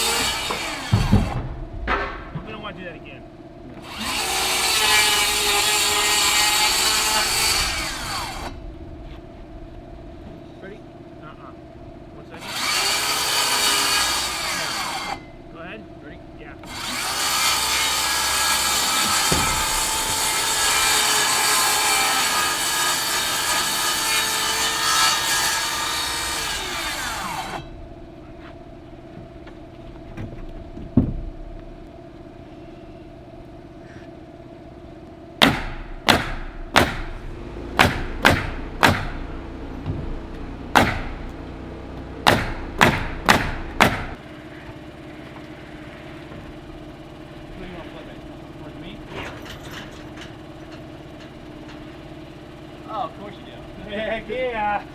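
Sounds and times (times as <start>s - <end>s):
circular saw cutting: 0.0s - 1.4s, 3.8s - 8.7s, 12.2s - 15.8s, 16.6s - 27.8s, 35.5s - 44.4s
sharp knocks: 0.0s - 2.7s, 18.2s - 22.8s, 35.4s - 41.4s, 42.2s - 44.2s.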